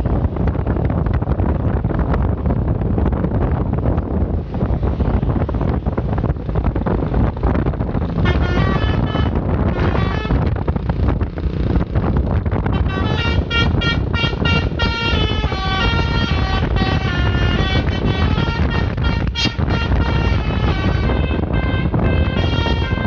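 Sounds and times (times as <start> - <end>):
road and wind noise: 0.0 - 23.0
melodic air horn tune: 8.2 - 10.4, 12.8 - 23.0.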